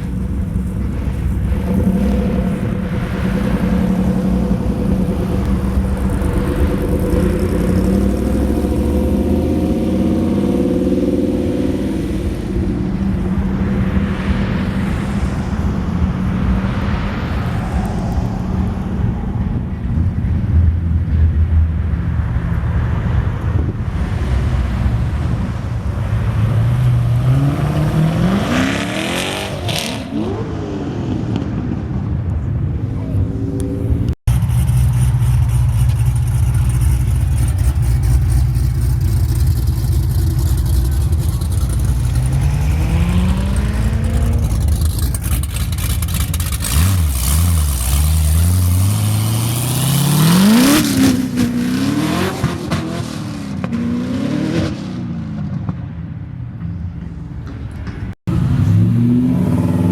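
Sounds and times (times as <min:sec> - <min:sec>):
low rumble: 0:00.0 - 0:29.3, 0:30.5 - 0:48.5
car engines revving: 0:00.0 - 0:59.9.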